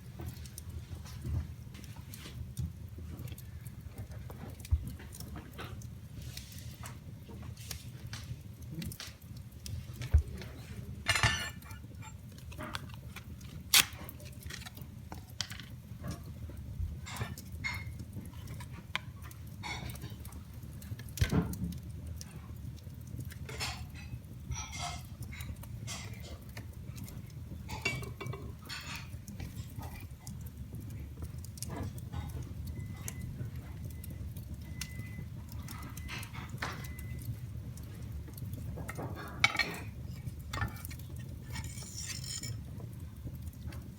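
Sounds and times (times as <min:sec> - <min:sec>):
wood fire crackling: 0:00.0 - 0:43.9.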